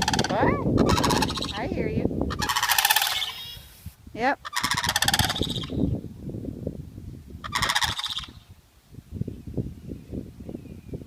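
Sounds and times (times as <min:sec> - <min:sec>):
cranes calling: 0:00.0 - 0:03.8, 0:04.4 - 0:05.8, 0:07.4 - 0:08.4.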